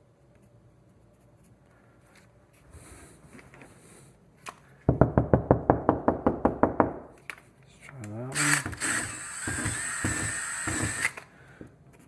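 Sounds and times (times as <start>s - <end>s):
rapid tapping on a wall: 9.4s - 11.0s.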